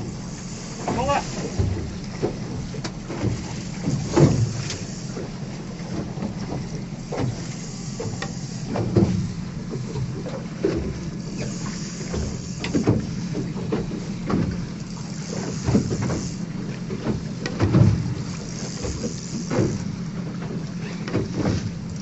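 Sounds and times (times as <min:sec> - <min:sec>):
hiss of wind or water: 0:00.0 - 0:01.9, 0:03.4 - 0:05.9, 0:07.0 - 0:09.5, 0:11.2 - 0:13.4, 0:15.0 - 0:16.6, 0:18.1 - 0:20.0
boat engine idling: 0:00.0 - 0:22.0.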